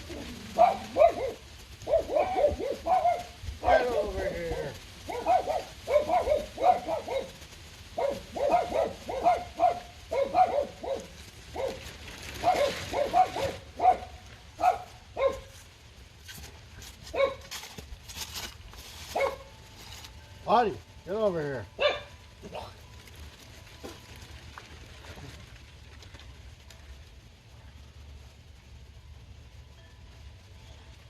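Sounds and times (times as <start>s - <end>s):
dog barking: 0.6s - 4.0s, 5.1s - 7.4s, 8.0s - 11.8s, 12.4s - 15.5s, 17.1s - 17.4s, 19.1s - 19.5s, 21.8s - 22.2s.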